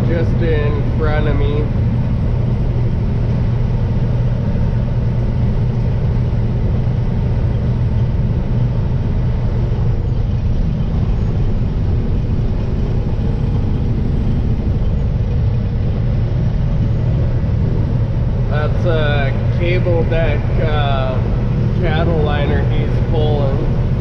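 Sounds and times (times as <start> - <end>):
diesel truck engine drone: 0.0 - 24.0
tyre and road noise: 0.0 - 24.0.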